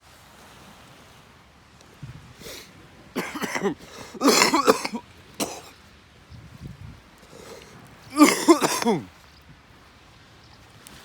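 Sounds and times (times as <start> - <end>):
person coughing hard: 3.2 - 5.7, 8.1 - 9.1.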